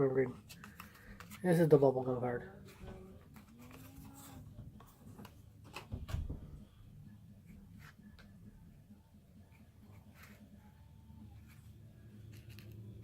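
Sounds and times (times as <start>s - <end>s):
trading cards clicking and rubbing: 0.3s - 1.8s, 2.7s - 5.9s, 9.4s - 13.0s
faint low hum: 2.3s - 13.0s.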